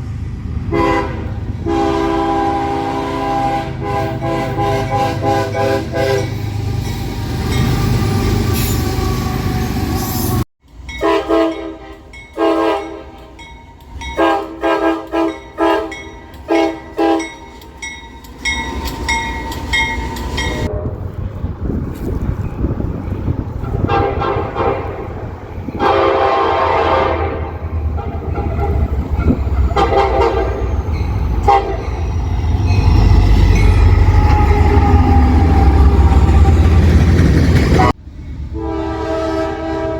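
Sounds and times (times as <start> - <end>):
passing train rumble: 0.0 - 39.9
locomotive air horns: 0.7 - 6.5, 11.0 - 13.4, 14.2 - 17.6, 23.7 - 32.0, 37.6 - 39.9.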